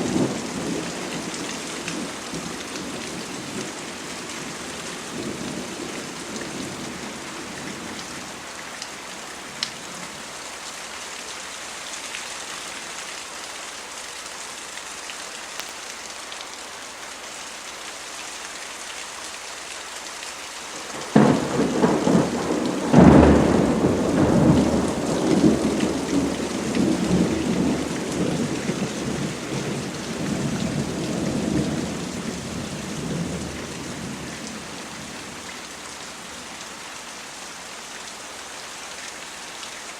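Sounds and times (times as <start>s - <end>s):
steady rain: 0.0s - 39.9s
thunder clap: 21.0s - 31.6s
rolling thunder: 21.0s - 34.6s.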